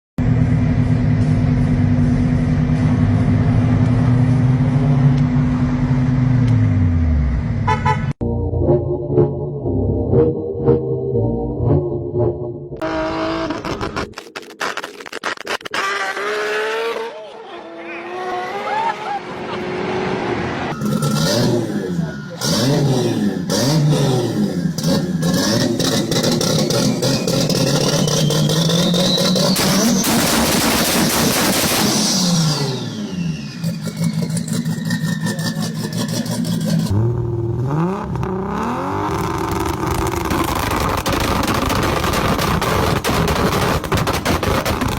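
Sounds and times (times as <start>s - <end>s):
loud car engine droning: 0.2s - 14.2s, 15.7s - 44.9s
exhaust crackling pops: 13.2s - 16.4s, 25.8s - 32.3s, 39.0s - 44.9s
turbo whistle: 20.7s - 23.4s, 26.6s - 30.8s, 32.0s - 35.8s.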